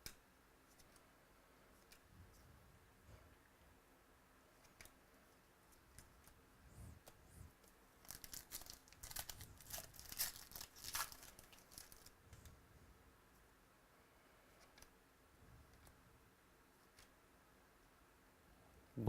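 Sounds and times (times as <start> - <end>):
foil wrapper crinkling: 8.0 - 12.2.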